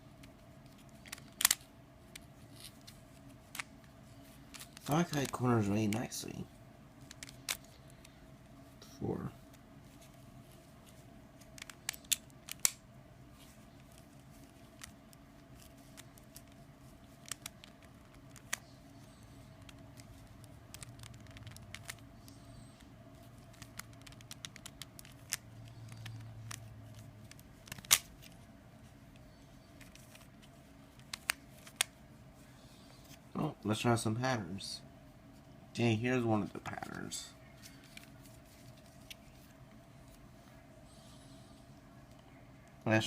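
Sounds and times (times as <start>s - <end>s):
faint steady hum: 0.0s - 43.0s
puzzle cube clicking: 1.0s - 1.6s, 19.6s - 22.0s, 23.5s - 28.1s.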